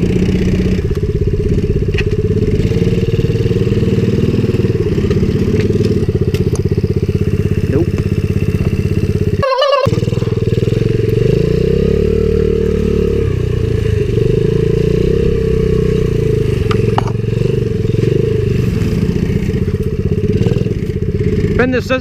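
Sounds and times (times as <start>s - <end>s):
small motorbike engine revving: 0.0s - 22.0s.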